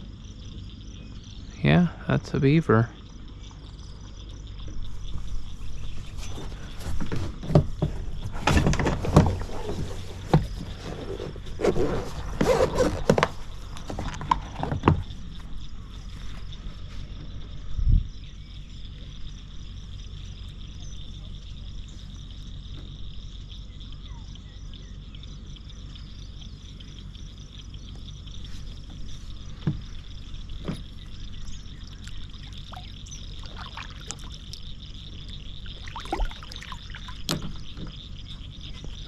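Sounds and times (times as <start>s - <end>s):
insects chirring: 0.0s - 39.0s
low steady hum: 0.0s - 39.0s
water lapping against boat: 31.8s - 39.0s.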